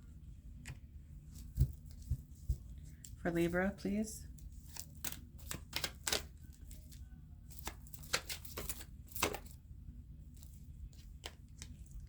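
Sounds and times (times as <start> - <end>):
cards being shuffled: 4.6 - 9.6, 10.3 - 12.0.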